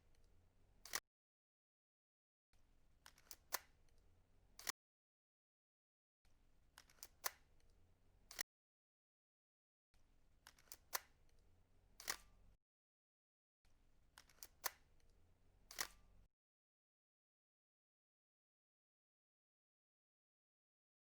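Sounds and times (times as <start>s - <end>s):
camera shutter clicks: 12.0s - 12.3s, 15.7s - 16.0s.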